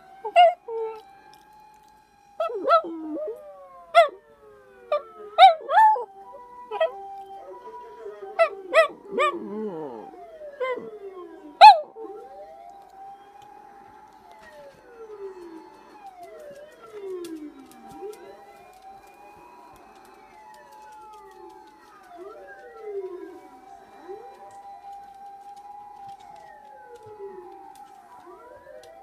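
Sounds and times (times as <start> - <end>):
fire truck sirens wailing: 0.0 - 29.0
dog barking: 11.6 - 11.9.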